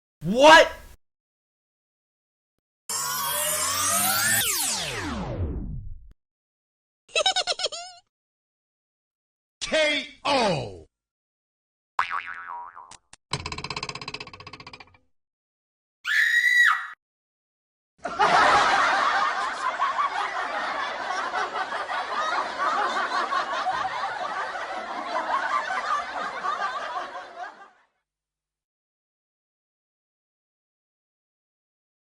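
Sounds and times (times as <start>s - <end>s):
rising and falling pitched effect: 2.9s - 6.1s
crowd laughing: 18.0s - 27.9s.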